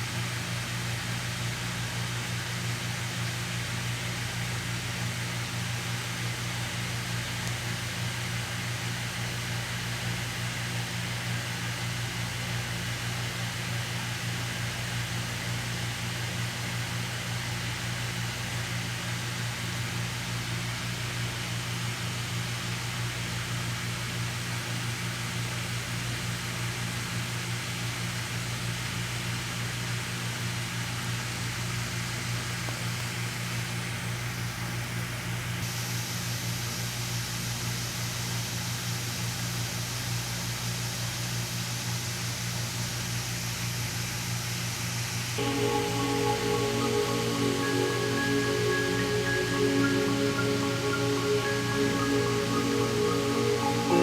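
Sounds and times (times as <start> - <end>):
fan-like hiss: 35.6 - 54.0.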